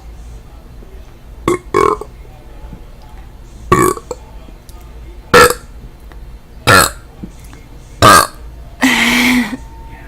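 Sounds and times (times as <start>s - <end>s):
woman burping: 1.5s - 2.1s, 6.7s - 7.0s, 8.0s - 9.6s.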